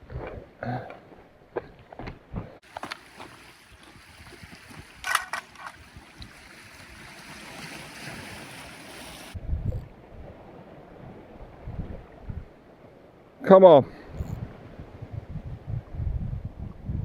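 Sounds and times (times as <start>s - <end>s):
sea waves washing on shore: 2.6s - 9.4s
sharp knocks or splashes: 2.6s - 9.4s
wind noise on microphone: 8.0s - 12.6s, 14.0s - 17.0s.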